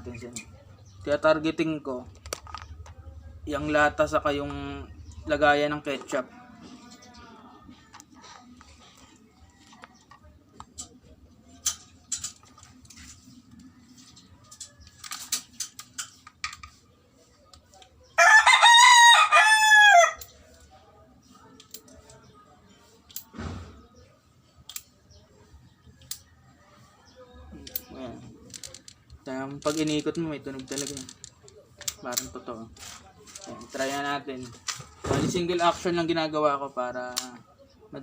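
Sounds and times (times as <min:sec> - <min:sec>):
rooster crowing: 0:18.2 - 0:20.3.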